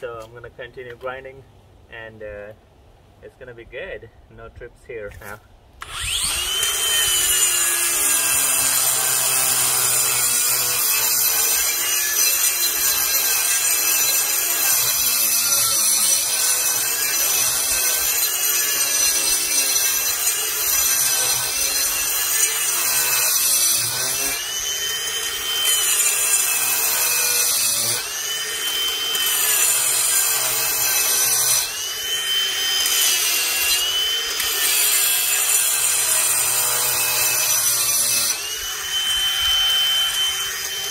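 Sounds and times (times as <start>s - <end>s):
angle grinder grinding concrete: 5.8s - 40.9s.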